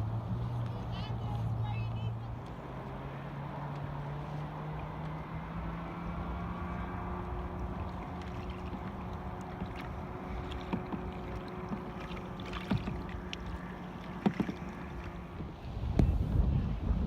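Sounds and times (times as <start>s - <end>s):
paddle splashing water: 0.3s - 15.7s
sharp splashes or knocks: 7.6s - 15.2s.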